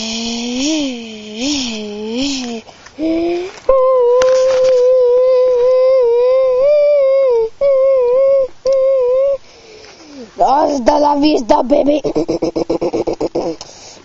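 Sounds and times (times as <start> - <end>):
person humming a high note: 0.0 - 9.5.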